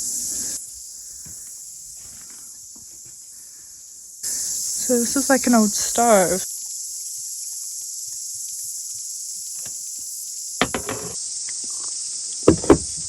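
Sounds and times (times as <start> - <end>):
insects chorus: 0.0 - 13.0
knocks: 10.6 - 11.2, 12.4 - 13.0.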